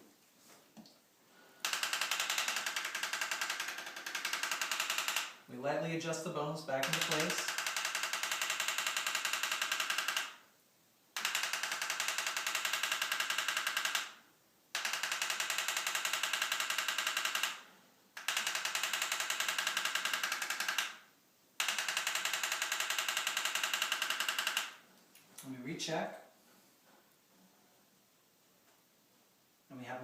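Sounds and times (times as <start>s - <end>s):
rapid clicking of adjusting instrument: 1.6s - 5.4s, 6.7s - 10.4s, 11.2s - 14.2s, 14.8s - 17.6s, 18.2s - 21.0s, 21.6s - 24.8s.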